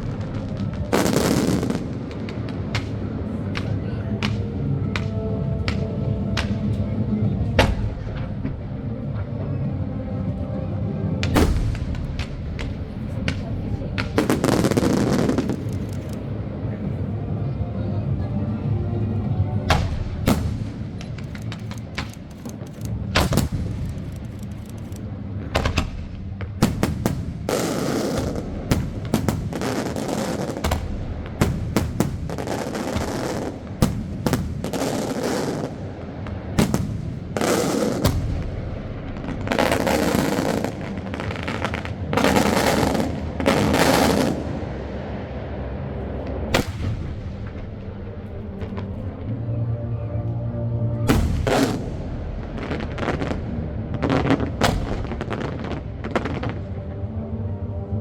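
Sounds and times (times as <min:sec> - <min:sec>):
fireworks bangs: 0:00.0 - 0:06.6, 0:11.2 - 0:16.2, 0:25.4 - 0:44.8, 0:46.5 - 0:48.9, 0:51.1 - 0:56.8
noisy firework bursts: 0:11.3 - 0:16.2, 0:25.6 - 0:44.7.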